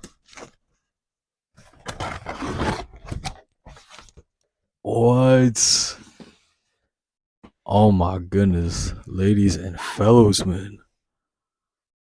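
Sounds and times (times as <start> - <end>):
packaging rustling and scraping: 1.6 - 4.3.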